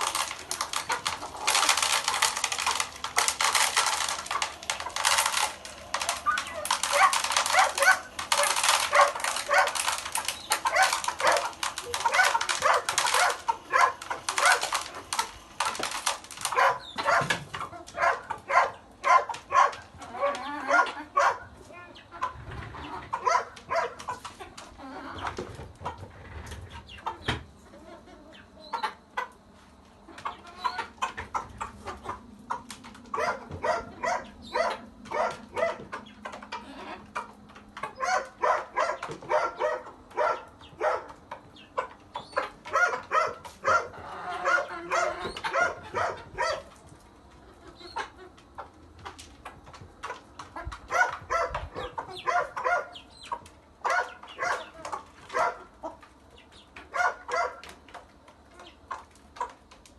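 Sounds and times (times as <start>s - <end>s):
chickens clucking: 0.0s - 59.9s
dogs barking: 6.0s - 14.9s, 16.4s - 21.6s, 23.1s - 24.2s, 33.1s - 36.1s, 37.8s - 41.2s, 41.8s - 46.7s, 50.8s - 55.9s, 56.8s - 57.7s.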